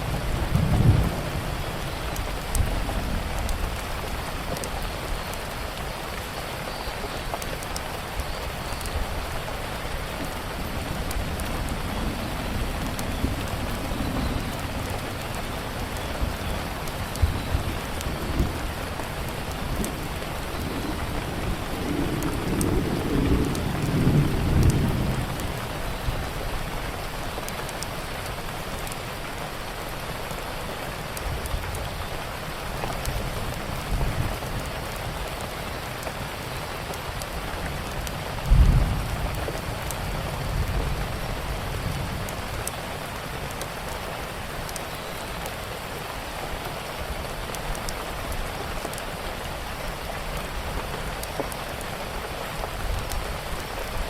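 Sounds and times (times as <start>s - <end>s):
thunder rumbling: 0.0s - 4.5s, 10.3s - 26.7s, 37.9s - 42.9s
steady rain: 0.0s - 54.0s
loud thunderclap: 38.4s - 39.6s.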